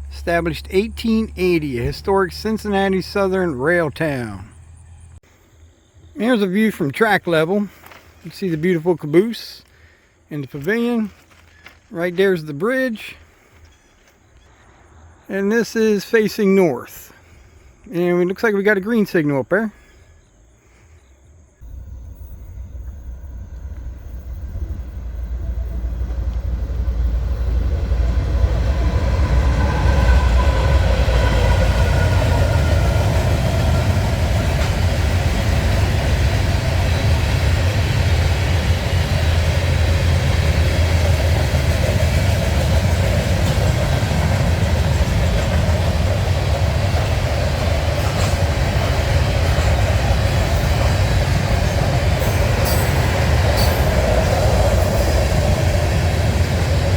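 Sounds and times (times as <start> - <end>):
freight train rumbling past: 0.0 - 5.2, 21.6 - 56.9.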